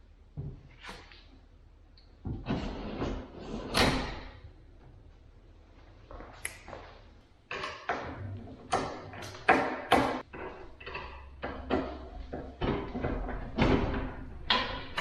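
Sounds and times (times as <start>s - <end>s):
cabinet doors and drawers knocking: 7.5s - 15.0s.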